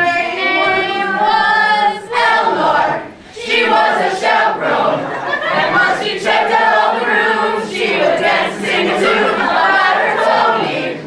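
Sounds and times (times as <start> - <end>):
choir singing: 0.0 - 11.0.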